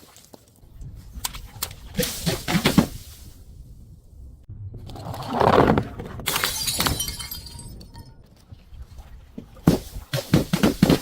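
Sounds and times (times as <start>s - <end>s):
glass shattering: 6.3s - 8.1s.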